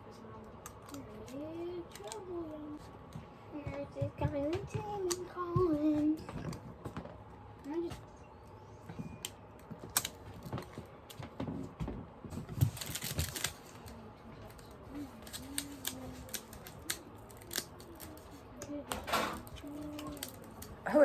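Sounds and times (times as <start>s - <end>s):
plastic wrapper crinkling and tearing: 12.5s - 18.4s, 19.4s - 20.8s.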